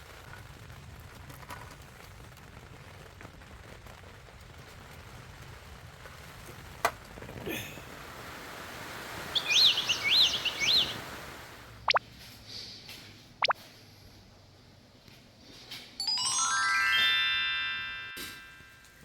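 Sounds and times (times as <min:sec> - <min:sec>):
steady hiss of rain or wind: 0:00.0 - 0:19.0
bird chirping: 0:09.2 - 0:11.2
bird whistling downward: 0:09.3 - 0:11.1.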